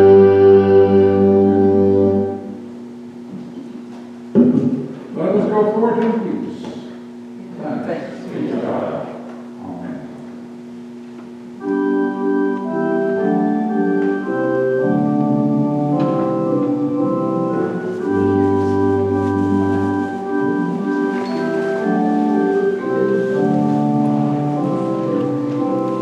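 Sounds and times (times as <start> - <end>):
church organ chords: 0.0 - 3.0, 11.4 - 26.0
deep organ pedal note: 0.0 - 3.0, 11.6 - 26.0.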